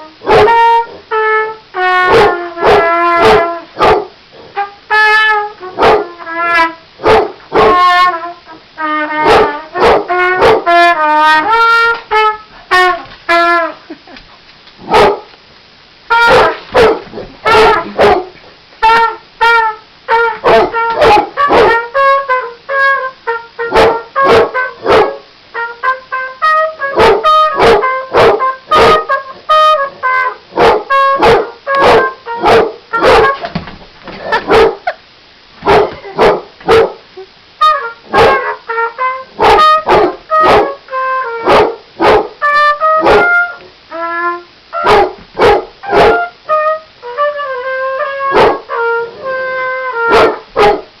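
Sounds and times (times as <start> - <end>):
trumpet playing: 0.0 - 14.1, 14.8 - 15.3, 15.9 - 51.0
dog barking: 0.2 - 1.0, 2.1 - 4.2, 5.7 - 6.1, 7.0 - 7.8, 9.2 - 10.7, 14.8 - 15.3, 16.2 - 18.4, 20.4 - 21.8, 23.7 - 25.2, 26.9 - 29.1, 30.5 - 33.5, 34.2 - 35.0, 35.6 - 37.0, 38.1 - 38.6, 39.4 - 40.8, 41.4 - 42.4, 43.0 - 43.3, 44.8 - 46.3, 48.3 - 48.7, 50.1 - 50.9.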